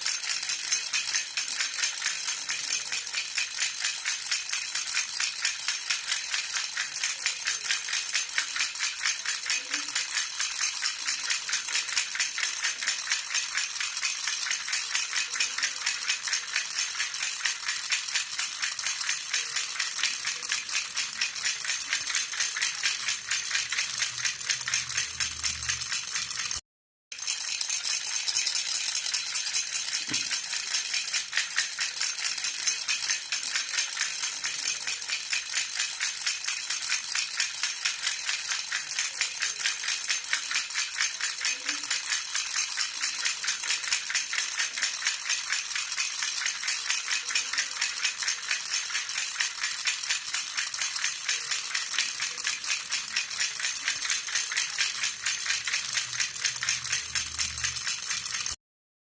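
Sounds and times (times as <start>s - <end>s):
metal baby rattle jingling: 0.0s - 26.6s, 27.2s - 58.6s.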